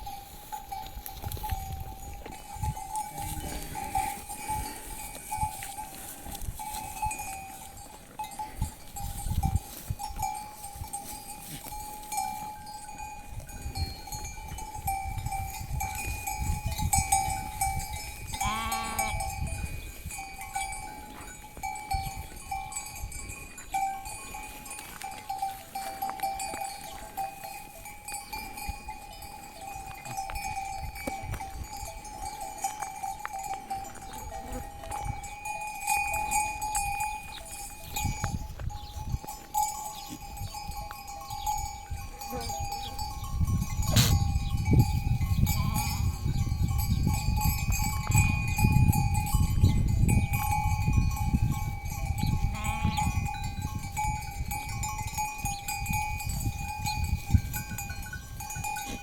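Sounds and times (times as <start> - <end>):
wind gusts on microphone: 0.0 - 33.1, 33.7 - 59.0
livestock bells ringing: 0.0 - 59.0
animal bleat: 18.4 - 19.2, 52.5 - 53.2.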